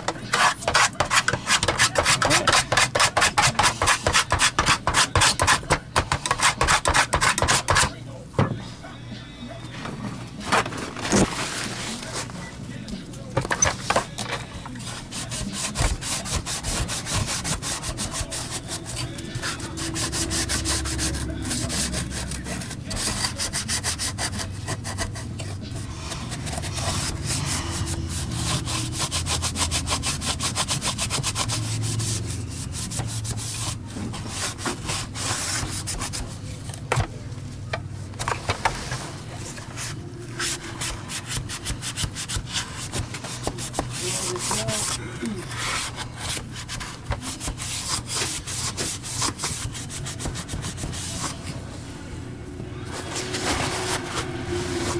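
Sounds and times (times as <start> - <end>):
brush scrubbing strokes: 15.0 - 25.2.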